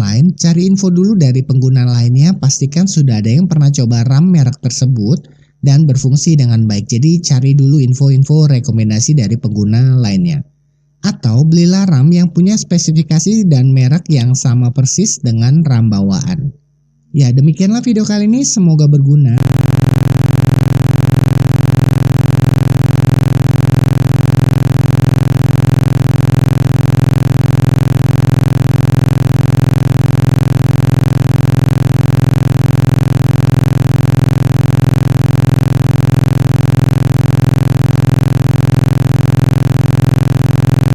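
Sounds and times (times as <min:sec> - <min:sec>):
synthetic buzzing drone: 0:19.4 - 0:40.9.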